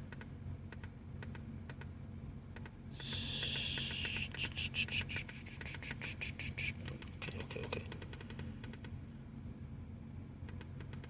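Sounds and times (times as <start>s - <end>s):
low steady hum: 0.0s - 11.0s
loud hiss: 3.0s - 6.7s.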